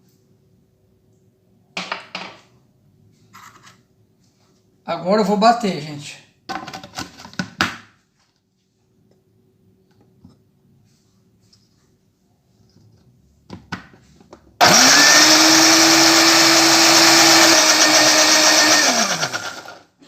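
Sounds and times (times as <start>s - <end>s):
blender motor running: 14.6s - 19.9s.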